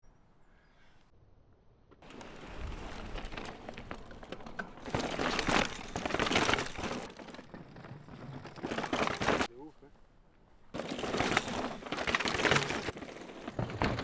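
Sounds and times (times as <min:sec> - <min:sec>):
bike tyres crunching on dirt: 0:01.9 - 0:14.0
bike rattling clicks: 0:02.0 - 0:07.4.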